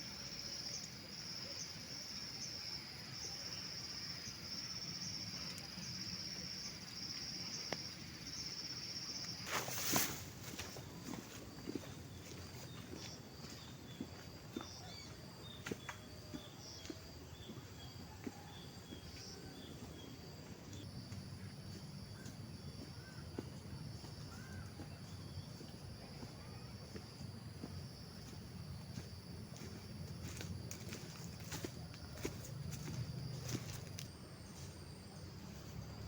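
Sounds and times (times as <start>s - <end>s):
higher-pitched insect: 0.0s - 36.0s
forest insects shrilling: 2.4s - 10.8s
footsteps through undergrowth: 9.4s - 14.8s, 22.2s - 34.8s.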